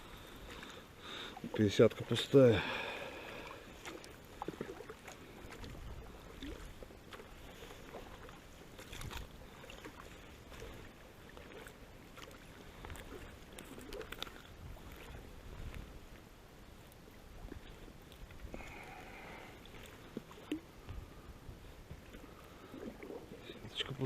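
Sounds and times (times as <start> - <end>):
water splashing and dripping: 1.4 - 15.2.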